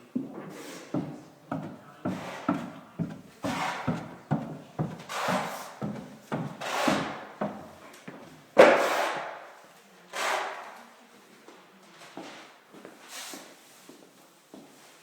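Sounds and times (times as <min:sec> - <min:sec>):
footsteps on wooden stairs: 0:00.2 - 0:08.4.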